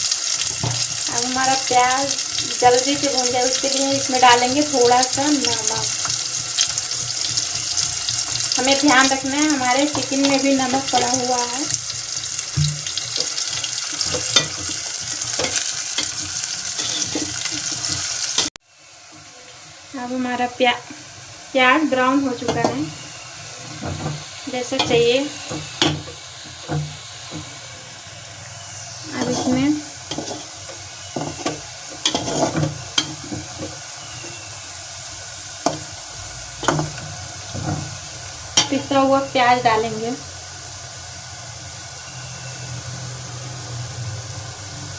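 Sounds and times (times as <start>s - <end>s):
onions sizzling in a pan: 0.0s - 44.9s
spoon scraping and knocking pan: 0.4s - 1.7s, 2.6s - 18.5s, 22.4s - 23.0s, 23.6s - 27.8s, 29.1s - 34.5s, 35.6s - 36.0s, 36.6s - 39.0s
utensil knocking against pan: 24.8s - 27.6s.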